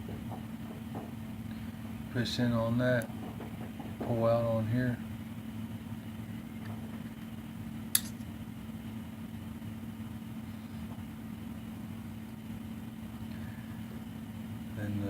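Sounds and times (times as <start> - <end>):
steady low hum: 0.0 - 15.0
pistol metallic click: 8.0 - 8.2.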